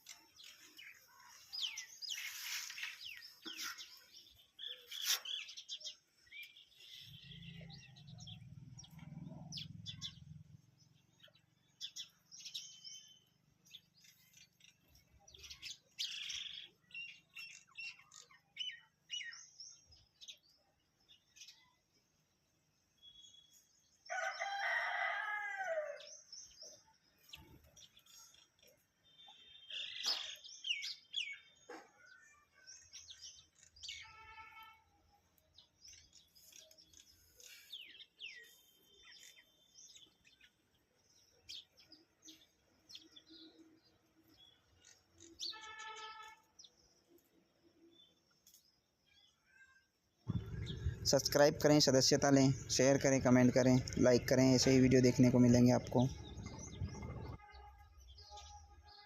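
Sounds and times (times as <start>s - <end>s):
small birds chirping: 0.0s - 22.0s, 23.0s - 59.0s
rooster crowing: 24.1s - 26.1s.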